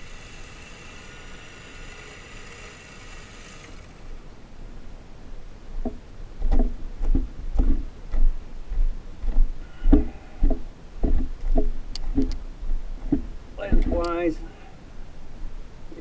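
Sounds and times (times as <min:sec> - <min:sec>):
hollow plastic knocks and clicks: 0:05.8 - 0:14.2.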